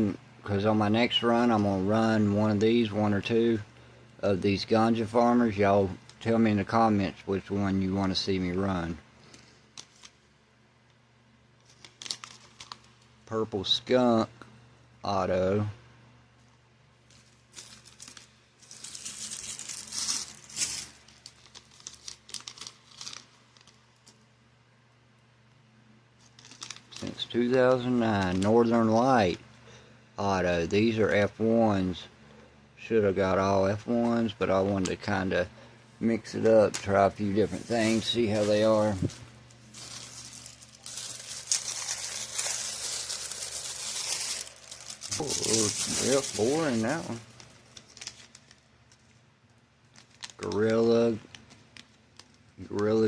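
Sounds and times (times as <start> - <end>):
packaging crinkling and rustling: 9.2 - 10.2, 11.6 - 13.2, 17.0 - 24.2, 26.2 - 28.8, 36.0 - 53.0.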